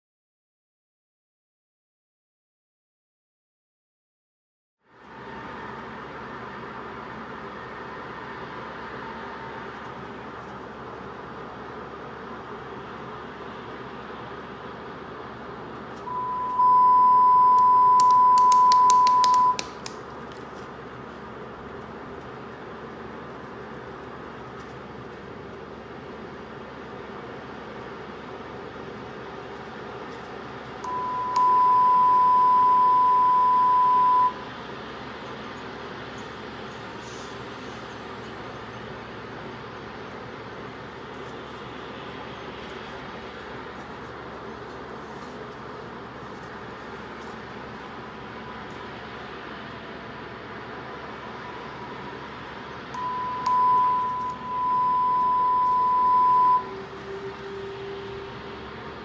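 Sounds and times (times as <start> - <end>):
steady background noise: 4.8 - 59.0
lower electronic tone: 16.0 - 19.6, 30.8 - 34.4, 52.9 - 58.8
high-pitched alarm beep: 16.1 - 19.6, 30.9 - 34.4, 53.0 - 56.7.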